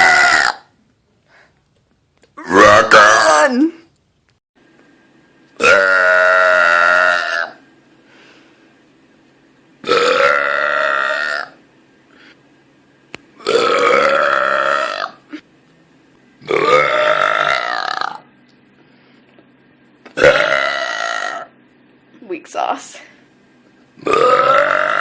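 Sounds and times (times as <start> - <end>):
woman burping loudly: 2.4 - 3.6, 5.6 - 7.6, 9.8 - 11.6, 13.4 - 15.4, 16.4 - 18.2, 20.2 - 21.5, 24.0 - 25.0.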